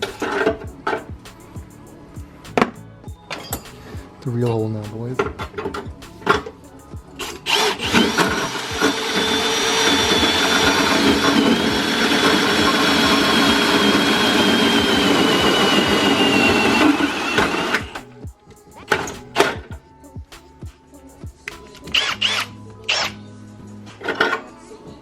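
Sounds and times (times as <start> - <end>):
electric drill whirring and whining: 7.4 - 18.0.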